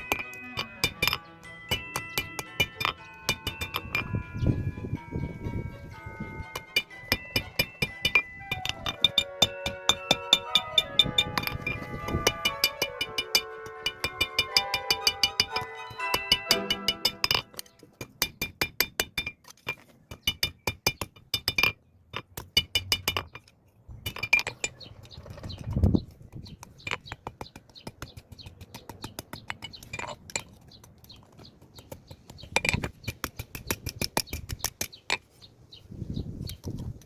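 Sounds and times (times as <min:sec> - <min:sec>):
hammer striking metal on anvil: 0:00.0 - 0:04.5, 0:06.0 - 0:19.3.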